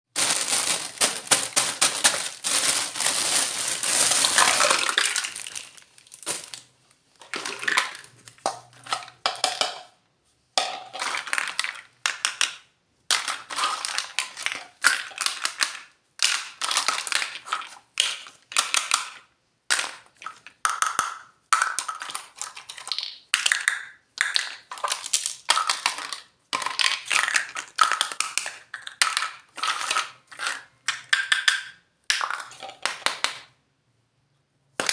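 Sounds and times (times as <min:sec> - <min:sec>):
plastic packaging crinkling: 0:00.2 - 0:06.7.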